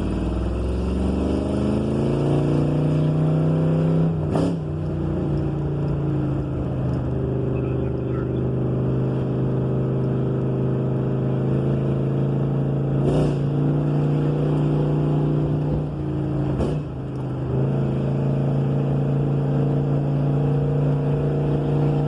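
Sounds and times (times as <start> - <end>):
car engine running: 0.0 - 22.0.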